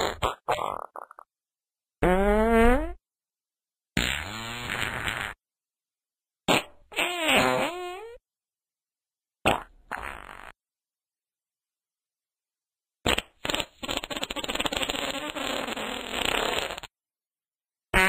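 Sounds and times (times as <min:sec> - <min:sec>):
farts: 0:00.0 - 0:01.3, 0:02.0 - 0:03.0, 0:04.0 - 0:05.4, 0:06.5 - 0:08.2, 0:09.4 - 0:10.6, 0:13.1 - 0:16.9.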